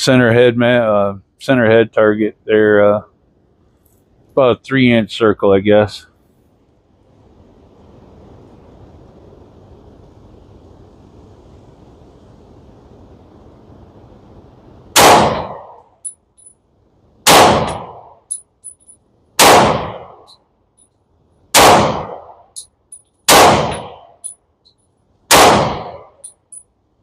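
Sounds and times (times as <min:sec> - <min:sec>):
pistol shots: 0:15.0 - 0:15.8, 0:17.2 - 0:18.1, 0:19.4 - 0:20.3, 0:21.5 - 0:22.4, 0:23.3 - 0:24.0, 0:25.3 - 0:26.1.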